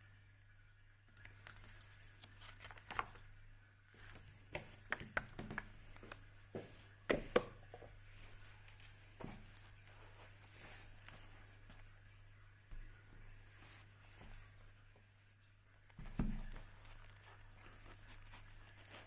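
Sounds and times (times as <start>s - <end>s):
hands handling plastic packaging: 1.1s - 14.8s, 15.9s - 19.0s.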